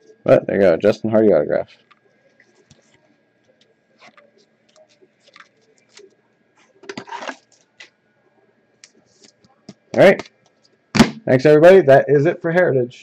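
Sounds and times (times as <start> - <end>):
packaging rustling: 4.0 - 7.9.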